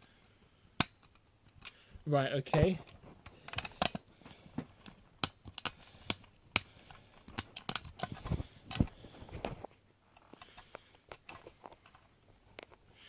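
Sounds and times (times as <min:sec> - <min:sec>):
small pistol parts clicking: 0:02.8 - 0:04.0, 0:04.8 - 0:08.9.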